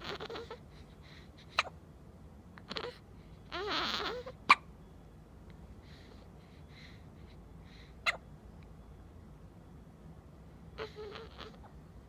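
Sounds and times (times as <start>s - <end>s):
baby whimpering: 0.0s - 0.7s, 2.6s - 4.4s, 10.8s - 11.8s.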